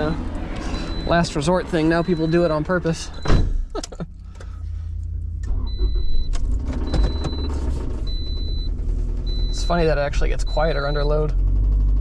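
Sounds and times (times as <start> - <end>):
high electronic beep: 0.8 - 3.4, 9.3 - 11.2
engine running with rod knock: 6.3 - 8.6.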